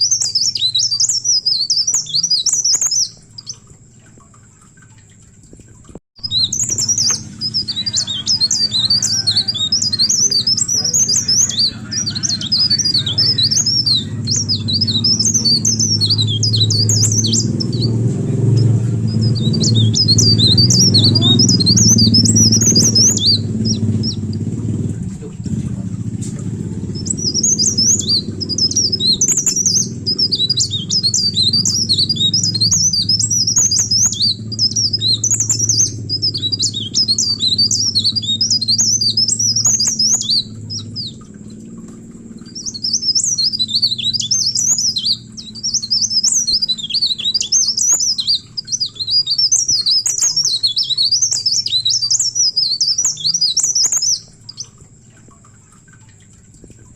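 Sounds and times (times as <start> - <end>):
songbird twittering: 0.0 - 4.8, 6.2 - 56.9
low hum: 0.0 - 56.9.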